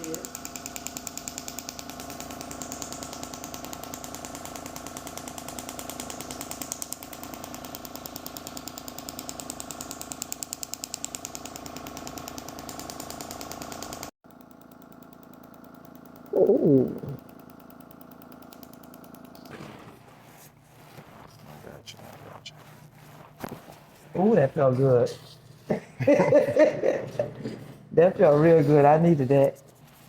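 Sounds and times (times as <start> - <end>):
shockwave device firing rapid pulses: 0.0 - 19.6
steady hum: 15.1 - 30.0.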